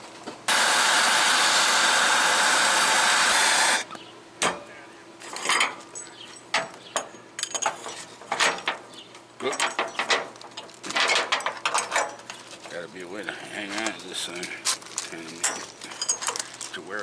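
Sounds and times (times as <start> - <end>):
welding arc hissing: 0.5 - 4.0.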